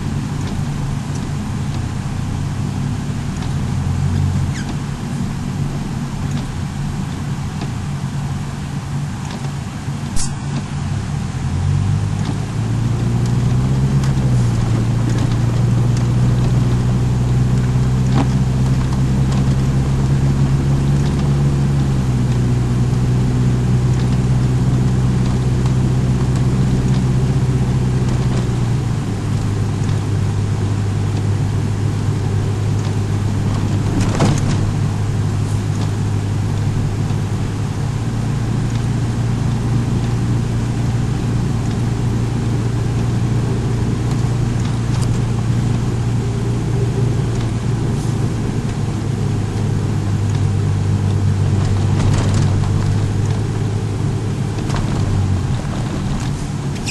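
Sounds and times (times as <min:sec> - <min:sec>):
car engine and road noise: 0:00.0 - 0:56.9
sharp click: 0:10.1 - 0:10.7.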